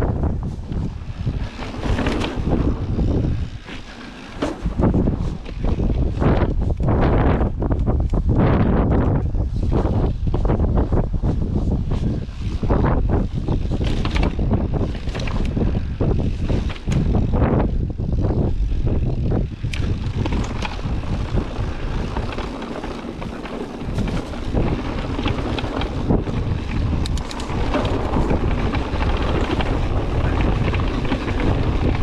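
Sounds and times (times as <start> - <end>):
bike rumbling over rough track: 0.0 - 32.0
wind buffeting microphone: 0.0 - 32.0
sharp clicks and rattles: 12.8 - 17.8, 18.8 - 32.0.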